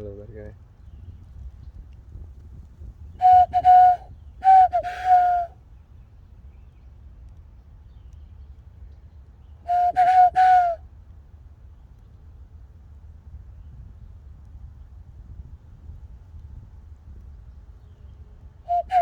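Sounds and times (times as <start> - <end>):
person whistling bird calls: 3.2 - 5.5, 9.7 - 10.8, 18.7 - 19.0.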